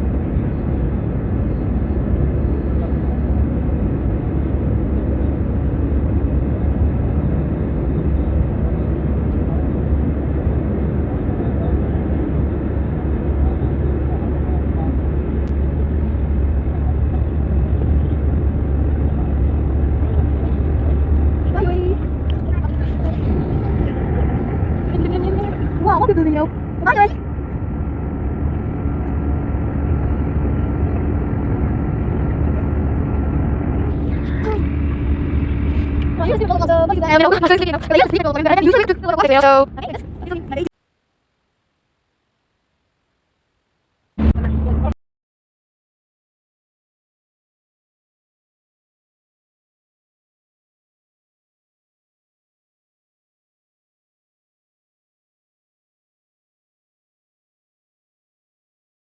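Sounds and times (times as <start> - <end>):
jet engine cabin rumble: 0.0 - 40.7, 44.2 - 45.0
faint steady hum: 0.0 - 45.0.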